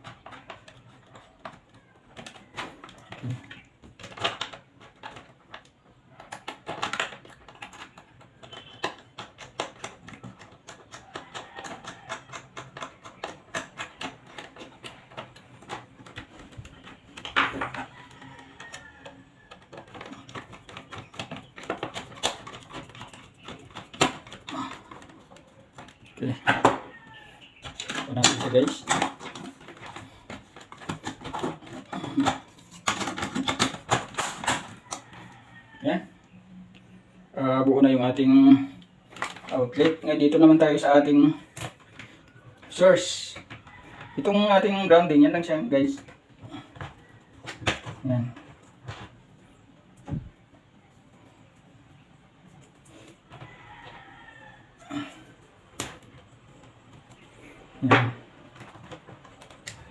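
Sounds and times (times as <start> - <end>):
plastic and metal parts clicking: 0.0 - 35.4.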